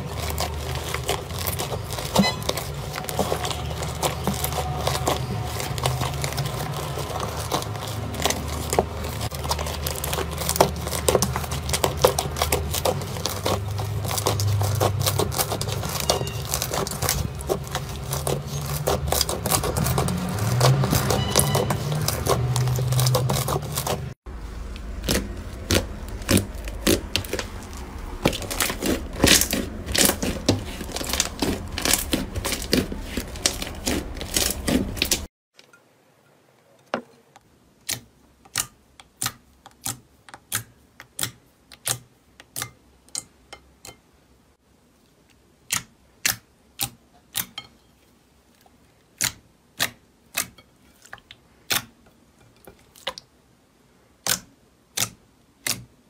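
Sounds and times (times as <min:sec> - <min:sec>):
slime crackling and popping: 0:00.0 - 0:35.3.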